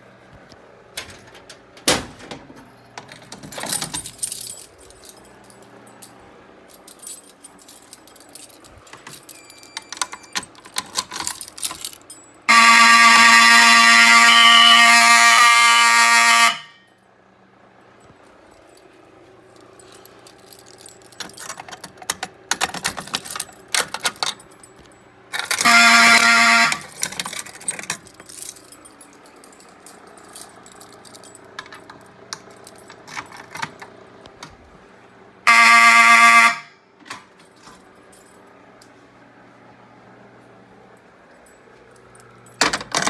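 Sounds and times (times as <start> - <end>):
clicks and rattles: 0.5 - 5.3, 19.6 - 25.8
fire alarm horn blasts: 12.5 - 17.0, 25.4 - 27.2, 35.4 - 37.0.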